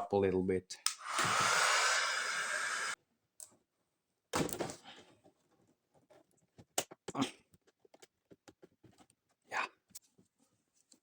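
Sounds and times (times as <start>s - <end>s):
hot-air blower rushing: 1.0s - 3.0s.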